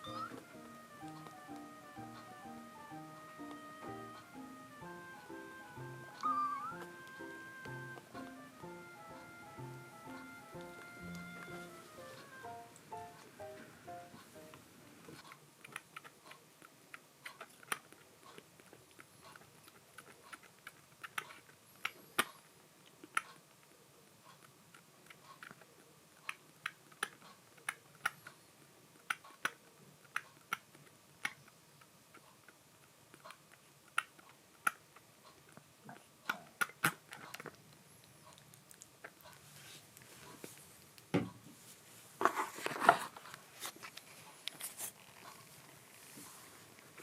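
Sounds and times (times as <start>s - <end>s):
kitten chewing and licking: 15.1s - 41.1s.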